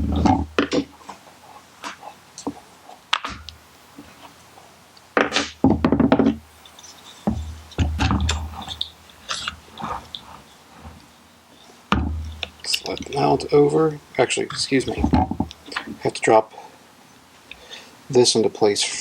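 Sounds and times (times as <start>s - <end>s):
metallic knocks and taps: 5.2s - 9.6s, 11.9s - 13.0s.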